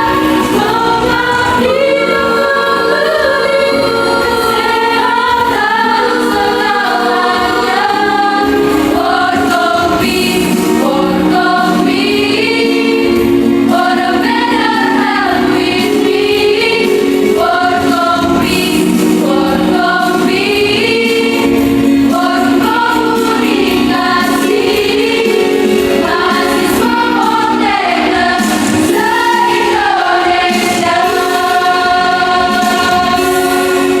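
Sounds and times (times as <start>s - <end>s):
choir singing in harmony: 0.0s - 34.0s.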